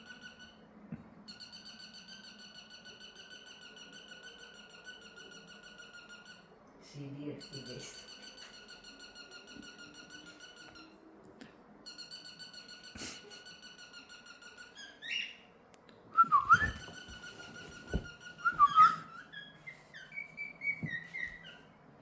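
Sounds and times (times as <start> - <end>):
cockatiel whistling and chirping: 11.9 - 15.4, 16.2 - 21.7.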